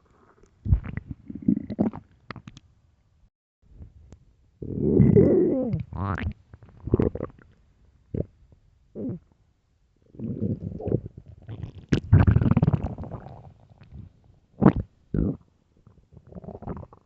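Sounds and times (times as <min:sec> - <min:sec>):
stomach growling: 0:00.0 - 0:02.6, 0:04.6 - 0:07.5, 0:08.1 - 0:08.3, 0:10.1 - 0:17.0.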